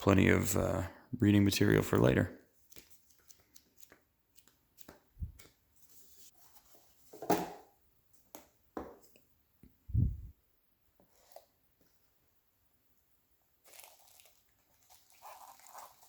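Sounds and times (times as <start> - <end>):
paper rustling: 2.6 - 7.2.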